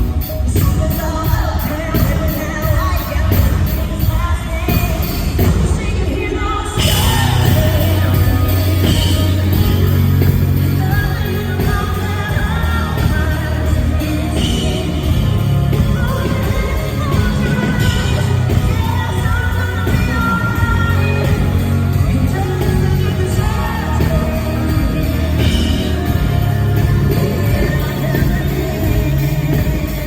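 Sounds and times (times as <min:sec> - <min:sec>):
live country pop band: 0:00.0 - 0:30.0
woman singing: 0:00.0 - 0:30.0.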